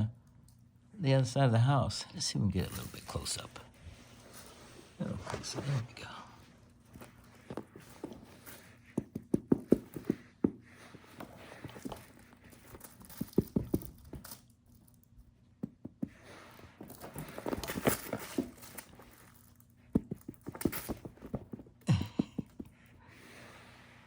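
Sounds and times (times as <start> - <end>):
cat scrambling on floor: 15.6 - 21.8.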